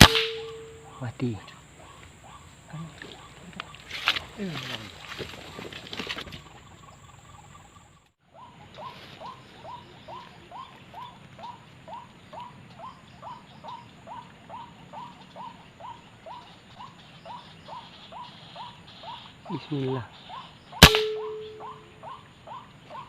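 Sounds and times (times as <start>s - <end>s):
bird calling falling notes: 0.0s - 2.1s, 20.8s - 22.2s.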